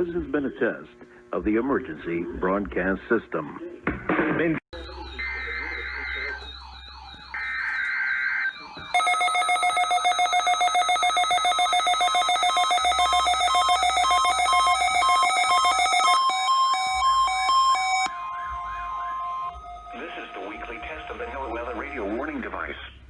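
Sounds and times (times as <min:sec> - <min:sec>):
rapidly pulsing ringing tone: 0:04.8 - 0:22.6
beeps at changing pitches: 0:09.0 - 0:22.4.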